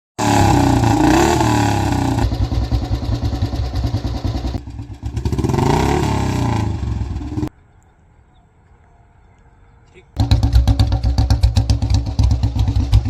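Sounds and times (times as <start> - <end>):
motorcycle engine revving and idling: 0.2 - 7.5, 10.2 - 13.0.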